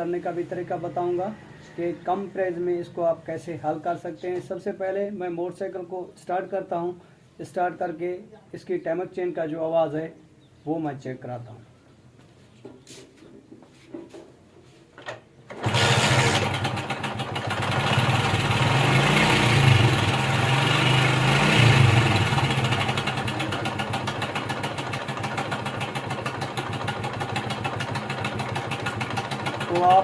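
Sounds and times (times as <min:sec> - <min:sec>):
motorcycle engine idling: 0:15.6 - 0:18.9, 0:21.9 - 0:30.0.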